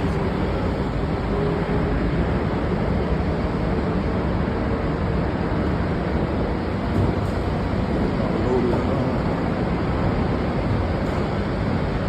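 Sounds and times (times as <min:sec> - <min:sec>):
semi-truck engine rumble: 0:00.0 - 0:04.4
faint hum: 0:00.0 - 0:12.0.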